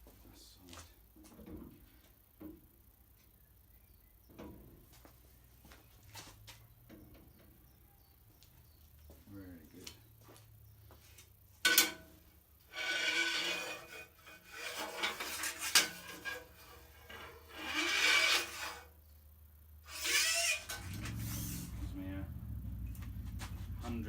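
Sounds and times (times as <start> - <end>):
metal parts scraping and rubbing: 12.7 - 18.9, 19.9 - 21.8.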